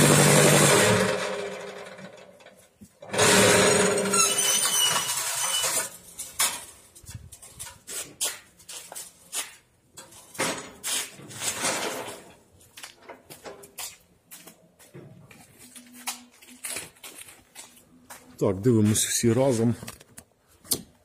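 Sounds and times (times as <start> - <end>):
machine motor winding down: 0.0 - 2.3, 3.1 - 4.4
machine noise with high squeal: 3.2 - 5.9
metal knocks and clanks: 10.0 - 13.8.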